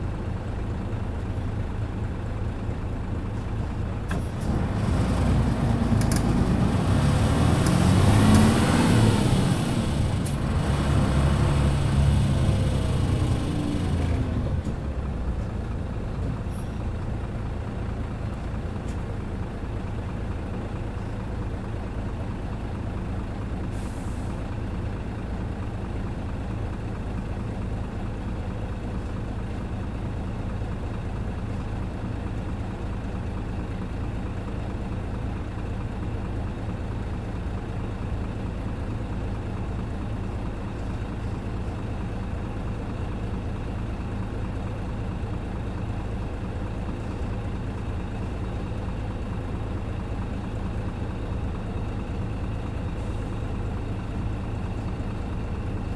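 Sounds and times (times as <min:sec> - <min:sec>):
bus engine droning: 0:00.0 - 0:55.9
air brake hiss: 0:23.7 - 0:24.4.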